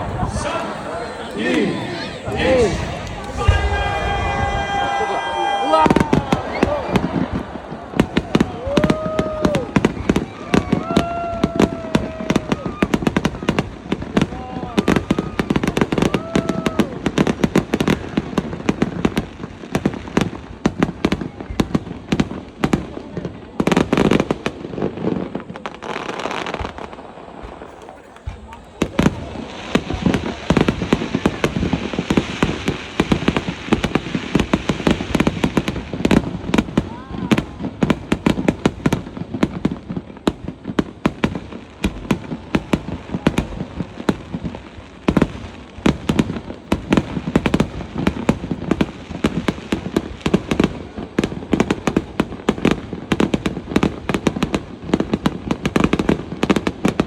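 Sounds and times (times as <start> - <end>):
people's voices: 0.0 - 17.0, 27.3 - 31.8
fireworks bangs and crackles: 0.0 - 57.0.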